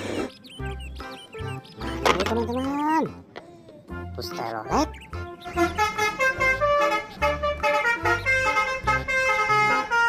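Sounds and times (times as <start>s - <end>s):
multi-tone musical bus horn: 5.6s - 10.0s.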